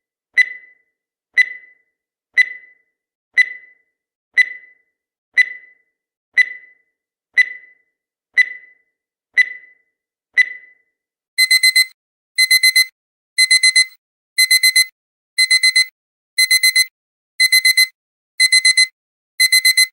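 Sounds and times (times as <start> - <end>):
countdown timer beeping: 11.4 - 19.9
digital alarm beeping: 11.4 - 19.9.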